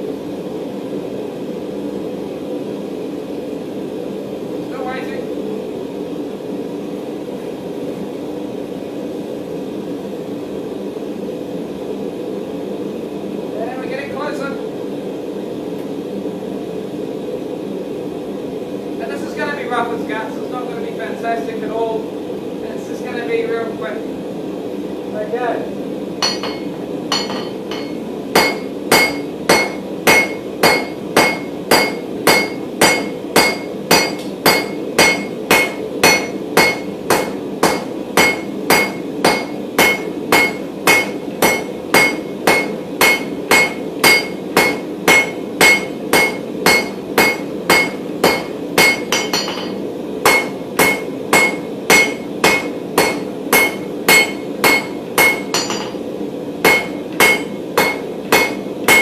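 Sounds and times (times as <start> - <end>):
hammer ringing on steel and anvil: 26.2 - 56.0, 56.7 - 59.0.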